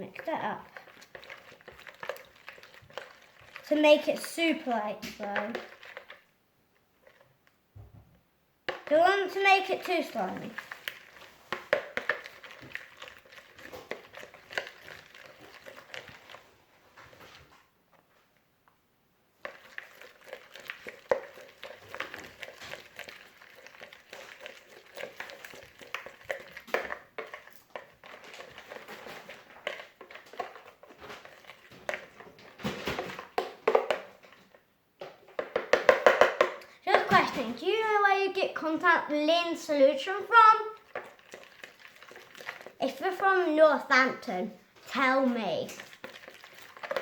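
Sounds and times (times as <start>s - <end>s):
utensil stirring slime in bowl: 0.0s - 6.3s, 7.0s - 7.3s, 8.7s - 17.6s, 19.4s - 47.0s.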